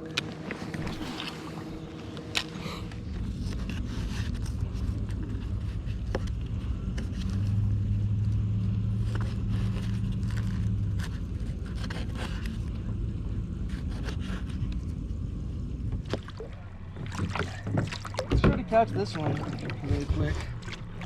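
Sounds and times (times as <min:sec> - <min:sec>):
boat motor humming: 0:00.0 - 0:21.0
gear knocking against kayak: 0:16.0 - 0:21.0.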